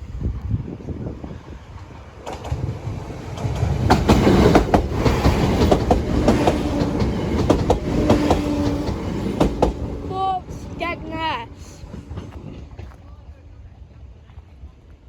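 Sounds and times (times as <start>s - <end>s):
train wheels rumbling and clicking: 0.4s - 15.0s.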